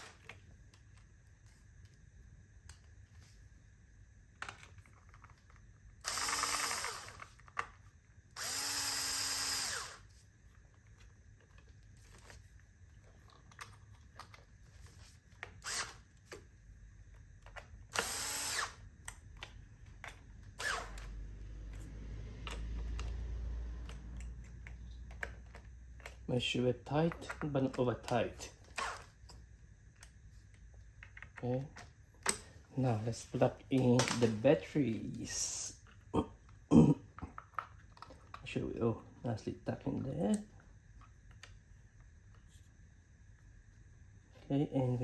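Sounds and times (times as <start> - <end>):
cordless electric screwdriver running: 6.0 - 7.3, 8.4 - 10.1, 15.6 - 16.0, 17.9 - 18.8, 20.6 - 21.1.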